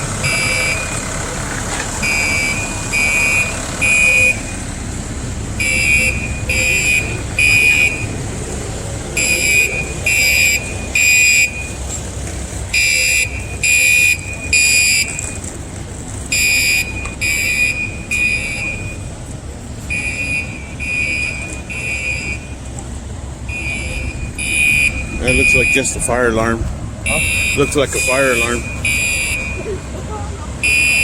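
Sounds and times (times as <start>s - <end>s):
fire alarm horn beeping: 0.0s - 1.3s, 2.0s - 4.8s, 5.6s - 8.3s, 9.2s - 11.8s, 12.7s - 15.5s, 16.3s - 19.1s, 19.8s - 22.7s, 23.4s - 26.4s, 27.0s - 29.7s, 30.6s - 31.0s.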